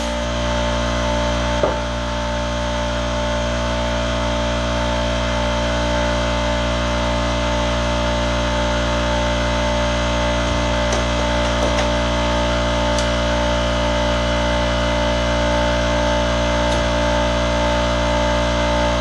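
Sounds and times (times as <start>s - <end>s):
power tool motor running: 0.0s - 2.0s.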